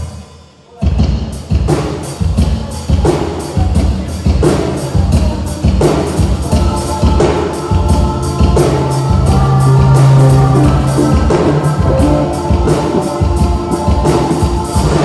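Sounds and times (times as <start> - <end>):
drum kit beat: 0.8 - 15.0
live band playing: 1.7 - 15.0
person singing: 2.4 - 15.0
low bass note: 6.8 - 13.3.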